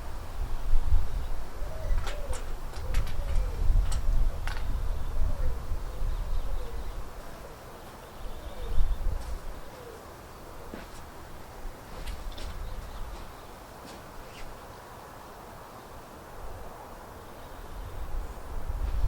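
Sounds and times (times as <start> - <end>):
wind buffeting microphone: 0.0 - 7.3, 8.3 - 9.6, 17.6 - 19.0
pigeon cooing: 1.6 - 3.8, 4.9 - 10.8.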